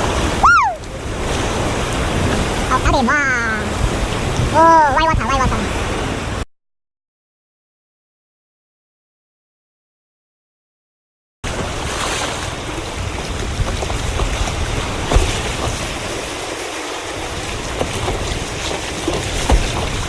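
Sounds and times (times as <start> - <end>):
splashes and knocks: 0.0 - 2.9, 11.4 - 20.0
water sloshing around kayak: 0.0 - 6.4, 11.5 - 20.0
wind buffeting microphone: 0.0 - 6.4, 11.5 - 20.0.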